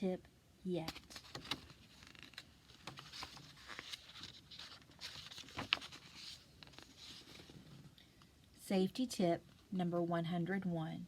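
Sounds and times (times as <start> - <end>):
paper rustling: 0.9 - 7.9.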